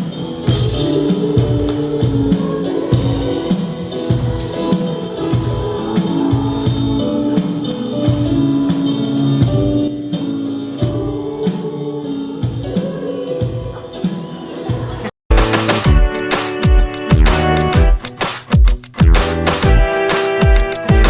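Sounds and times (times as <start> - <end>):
group of voices singing: 0.0 - 15.1
band accompaniment: 0.0 - 21.0
drum kit beat: 0.0 - 21.0.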